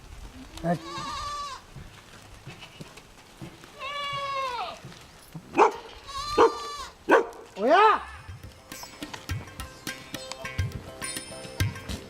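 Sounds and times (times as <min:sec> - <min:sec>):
goats bleating: 0:00.5 - 0:01.7, 0:03.6 - 0:04.9, 0:05.9 - 0:07.0.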